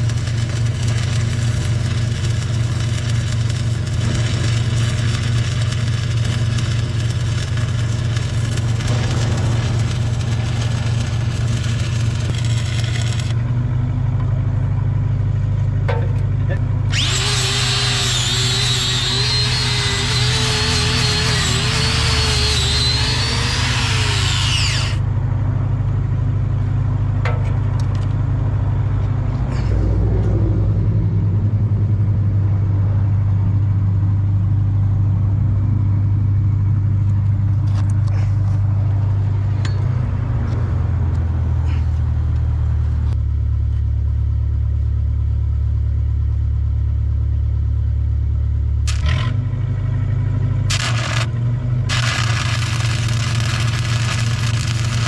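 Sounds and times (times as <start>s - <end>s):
hissy crackle: 0.0s - 13.4s, 50.7s - 51.3s, 51.9s - 55.0s
engine droning: 0.0s - 55.0s.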